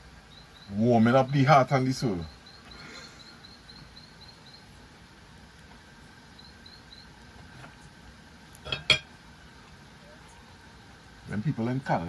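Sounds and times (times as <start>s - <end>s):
faint high chirping: 0.0s - 5.0s, 6.0s - 8.0s
wood fire crackling: 0.0s - 11.7s.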